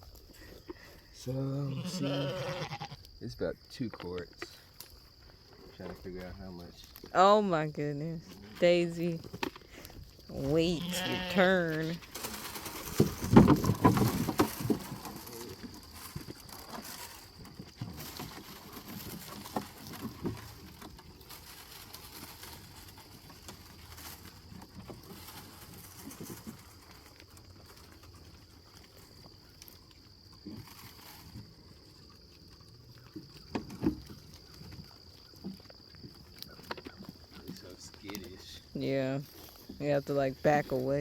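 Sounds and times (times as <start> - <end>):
sheep eating: 8.2 - 13.8, 14.5 - 40.8.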